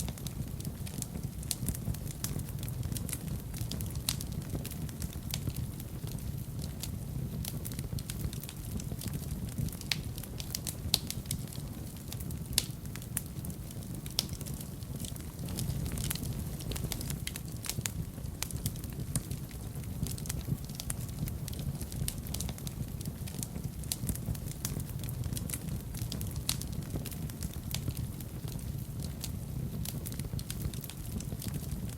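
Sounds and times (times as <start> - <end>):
wood fire crackling: 0.0 - 31.9.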